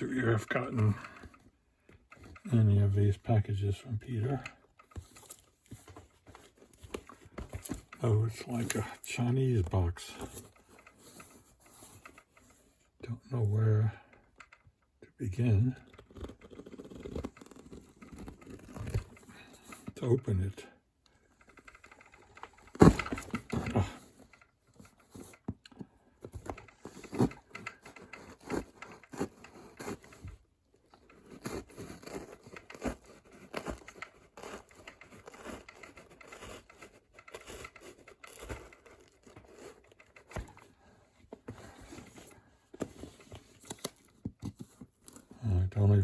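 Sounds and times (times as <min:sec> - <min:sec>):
scratches and light knocks: 0:00.1 - 0:14.6, 0:15.4 - 0:20.5, 0:21.3 - 0:46.0
wrapping crinkling and tearing: 0:31.0 - 0:40.4.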